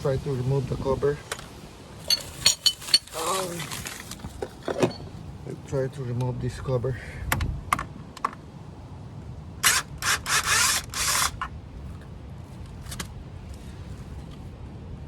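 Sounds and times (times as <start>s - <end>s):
metal parts scraping rattles: 2.0s - 5.1s.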